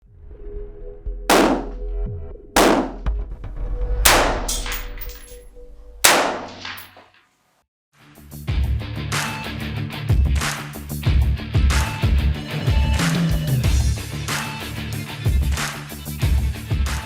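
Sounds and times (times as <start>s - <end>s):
heavy metallic impact hits: 1.3s - 1.8s, 2.6s - 3.0s, 4.1s - 5.4s.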